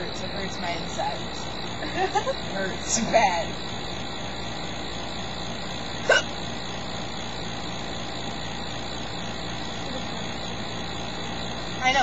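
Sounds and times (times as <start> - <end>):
background hum: 0.0 - 12.0
woman hiccuping: 6.0 - 6.3.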